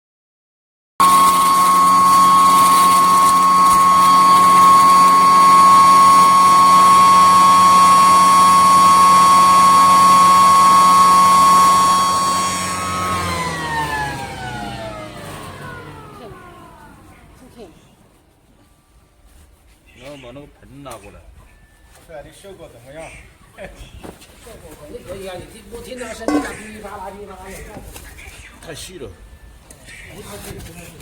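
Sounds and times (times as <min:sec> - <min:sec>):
grain grinder whining: 0:01.0 - 0:17.6, 0:26.3 - 0:26.7.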